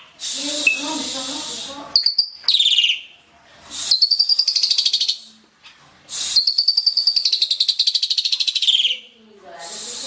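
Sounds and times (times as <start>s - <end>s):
harsh bird rasp: 6.1s - 8.7s.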